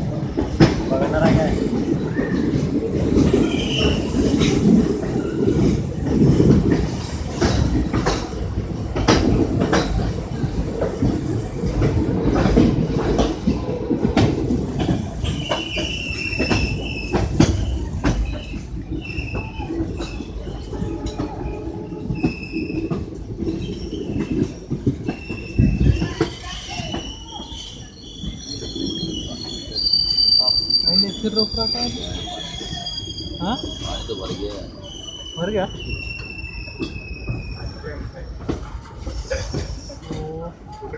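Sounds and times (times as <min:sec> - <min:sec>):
train wheels clacking on rails: 0:00.0 - 0:40.9
wheels squealing: 0:03.2 - 0:06.4, 0:14.8 - 0:40.9.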